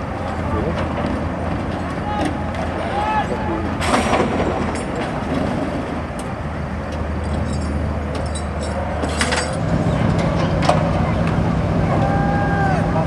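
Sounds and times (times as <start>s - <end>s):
car engines running: 0.0s - 13.0s.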